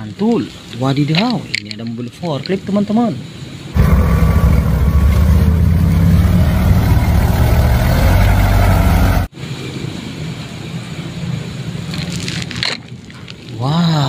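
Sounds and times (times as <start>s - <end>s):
vehicle engine running loudly: 3.8s - 9.3s.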